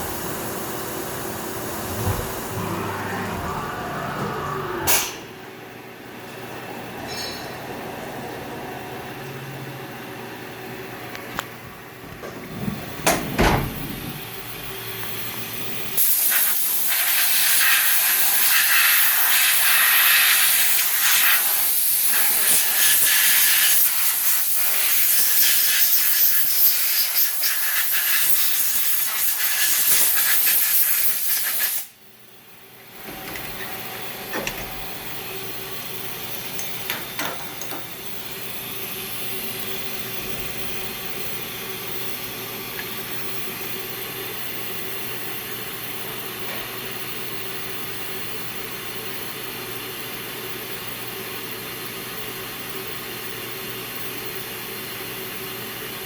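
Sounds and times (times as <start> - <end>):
cnc mill running: 0.0 - 5.7.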